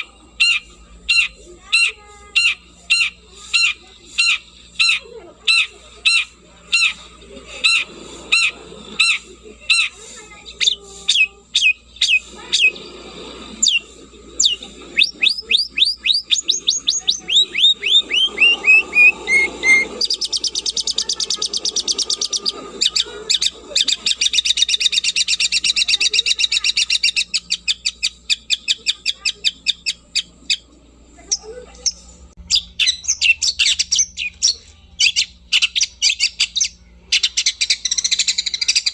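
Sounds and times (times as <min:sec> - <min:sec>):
bird singing sharp notes and trills: 0:14.4 - 0:21.0.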